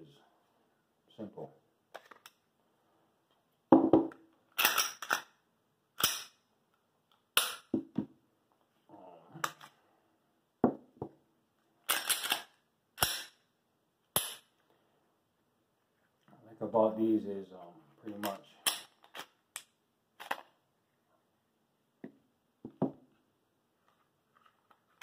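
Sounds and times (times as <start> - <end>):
pistol parts clacking and clicking: 1.9 - 2.4, 4.1 - 5.4, 6.0 - 6.4, 7.1 - 8.0, 11.8 - 13.4, 14.1 - 14.6, 18.1 - 20.6.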